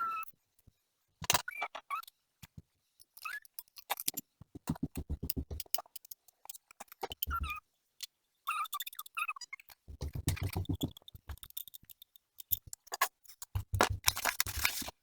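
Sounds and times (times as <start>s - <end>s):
cardboard and plastic handling: 13.6s - 15.0s.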